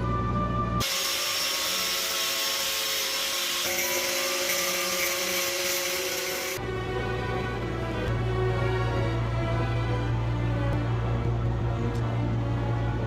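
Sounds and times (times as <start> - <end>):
music: 0.0 - 13.0
power tool whirring: 0.8 - 6.6.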